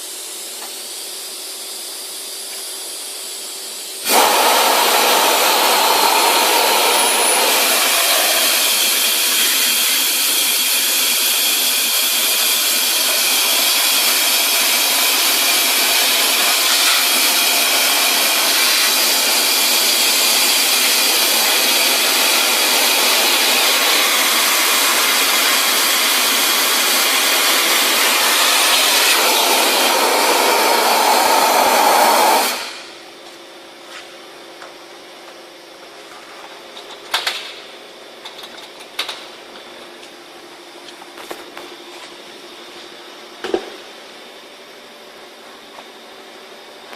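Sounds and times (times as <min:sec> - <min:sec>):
industrial vacuum cleaner hissing: 0:00.0 - 0:33.1.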